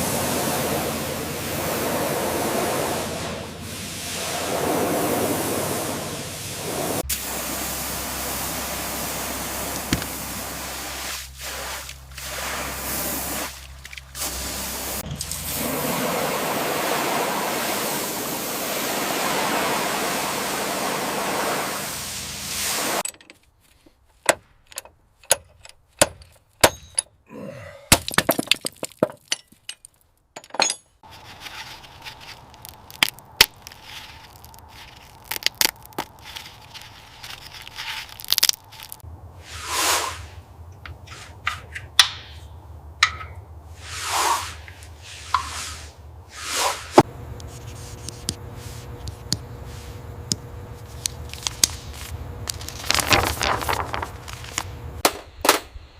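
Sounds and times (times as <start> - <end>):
loud steady hiss: 0.0 - 23.0
sharp cracks clinks and knocks: 24.2 - 27.2, 27.9 - 31.0.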